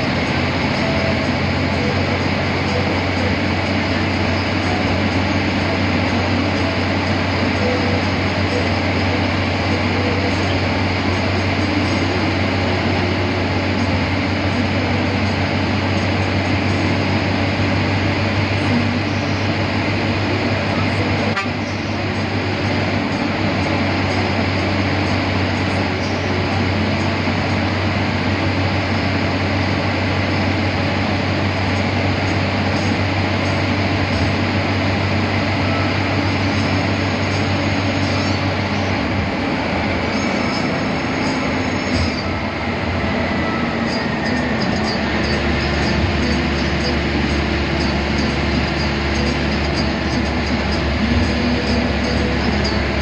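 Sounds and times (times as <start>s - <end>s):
bus engine drone: 0.0s - 53.0s
road and wind noise: 0.0s - 53.0s.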